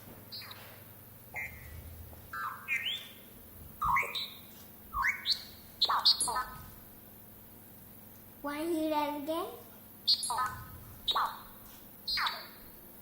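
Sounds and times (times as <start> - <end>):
electronic chirps and beeps: 1.4 - 3.2, 3.8 - 4.4.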